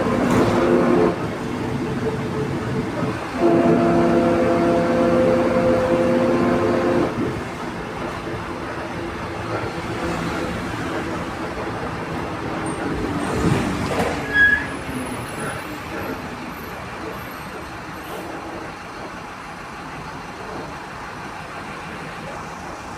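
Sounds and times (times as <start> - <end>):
bus diesel engine droning: 0.0 - 22.9
loud clunk: 0.2 - 0.7
short squeal: 14.1 - 14.8.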